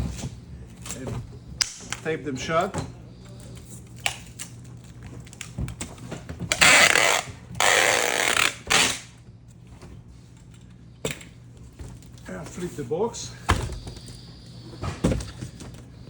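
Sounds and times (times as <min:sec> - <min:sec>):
packing tape pulled off roll: 0:03.6 - 0:09.2.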